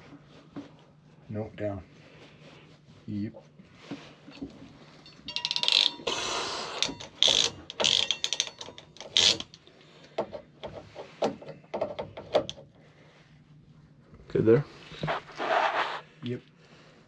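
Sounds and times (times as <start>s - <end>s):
crimp tool ratchet clicking: 6.8s - 9.6s.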